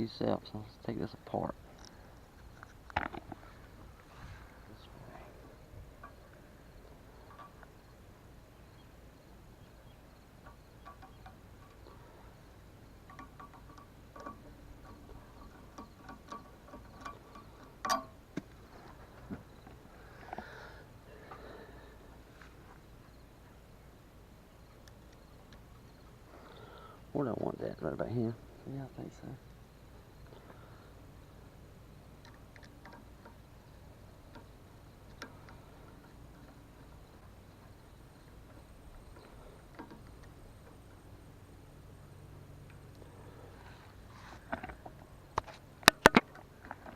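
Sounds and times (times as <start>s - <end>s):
low steady hum: 0.0s - 46.9s
small hardware clicks and taps: 13.0s - 18.5s, 32.2s - 33.4s, 38.4s - 41.0s, 45.4s - 46.9s.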